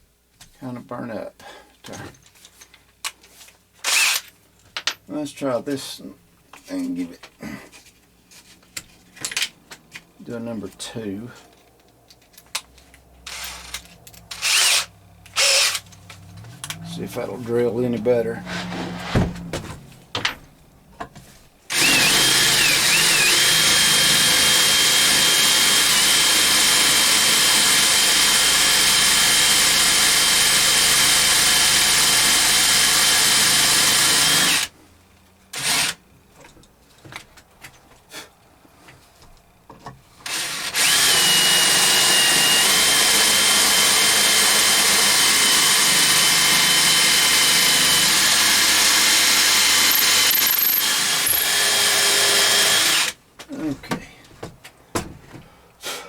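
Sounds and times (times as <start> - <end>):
electric drill whining: 3.8 - 4.2, 13.3 - 15.9, 21.7 - 34.7, 40.3 - 53.2
small knocks: 53.8 - 55.5.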